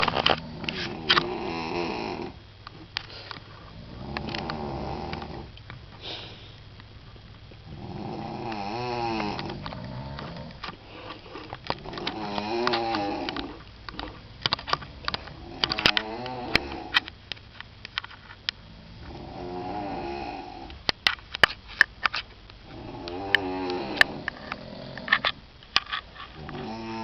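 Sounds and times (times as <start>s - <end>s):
woman snoring loudly: 0.0s - 2.4s, 3.7s - 5.6s, 7.6s - 10.6s, 11.7s - 13.6s, 15.4s - 17.1s, 18.7s - 20.8s, 22.6s - 25.3s, 26.4s - 27.0s
sharp clicks: 11.4s - 18.6s.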